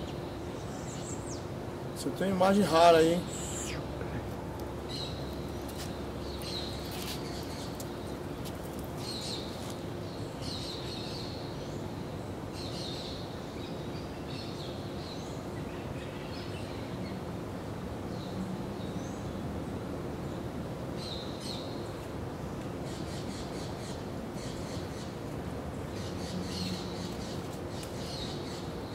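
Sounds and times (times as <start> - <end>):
background hiss: 0.0 - 28.9
bird chirping: 2.6 - 3.8.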